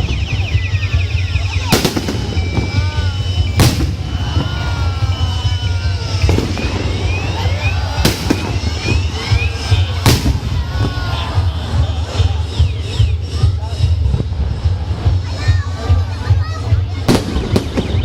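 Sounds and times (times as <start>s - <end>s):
whistling fireworks: 0.0s - 18.0s
firework shells bursting: 1.7s - 11.1s.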